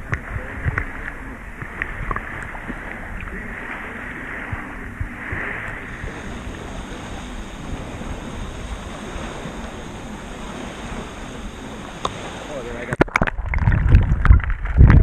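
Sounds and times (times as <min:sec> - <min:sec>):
wind rushing: 0:00.0 - 0:12.8
moving water: 0:00.0 - 0:15.0
wind rumble on microphone: 0:00.0 - 0:15.0.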